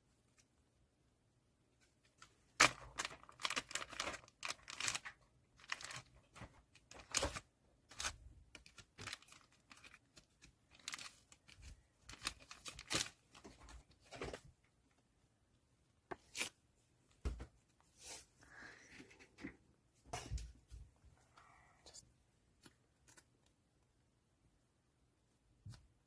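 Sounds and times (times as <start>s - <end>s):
plastic packaging crinkling: 2.6s - 13.6s.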